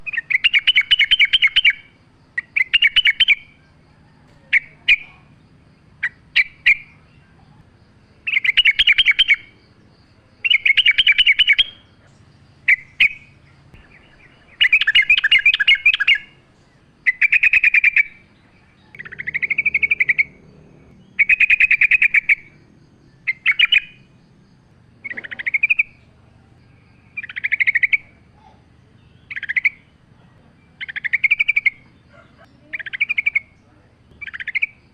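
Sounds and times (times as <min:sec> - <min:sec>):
bird singing bubbly phrases: 0:00.0 - 0:34.9.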